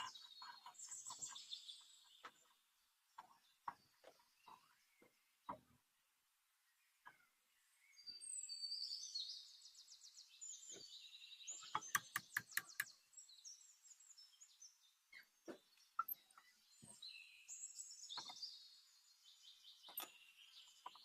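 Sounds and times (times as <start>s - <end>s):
birds chirping and trilling: 0.0s - 21.0s.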